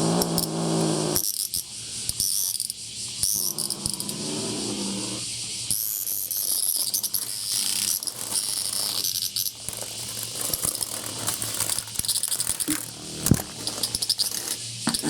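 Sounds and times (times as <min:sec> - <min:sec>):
cicada buzzing in rasping bursts: 0:00.0 - 0:15.0
low cat growl: 0:03.4 - 0:05.2.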